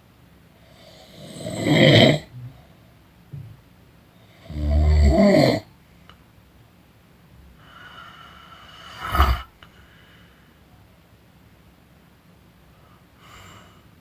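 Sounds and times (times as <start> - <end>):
person snoring: 0.8 - 2.5, 4.4 - 5.7, 7.7 - 9.6
short sharp snort: 8.7 - 9.6.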